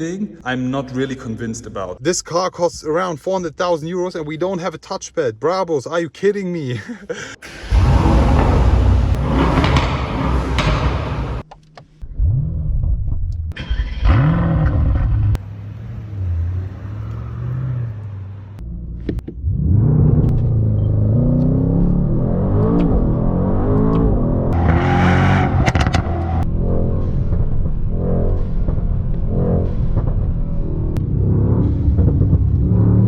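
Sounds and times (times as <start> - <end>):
exhaust crackles: 7.1 - 33.0
car engine revving and accelerating: 7.4 - 11.4, 13.8 - 33.0.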